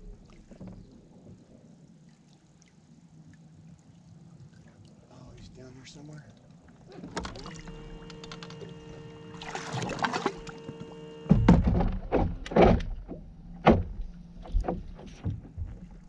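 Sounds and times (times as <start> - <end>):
boat hum: 0.0 - 16.0
water splashing against hull: 0.0 - 16.0
knocks against hull: 9.4 - 16.0.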